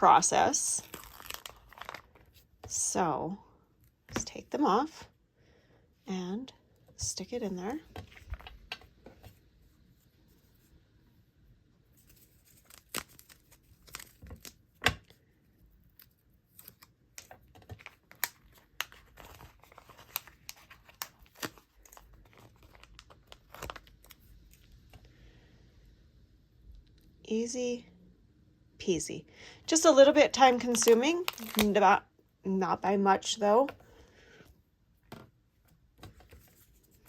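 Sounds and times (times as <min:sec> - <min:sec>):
stickers peeling and crinkling: 0:00.4 - 0:02.4, 0:12.0 - 0:14.8, 0:15.9 - 0:24.8, 0:30.4 - 0:31.8.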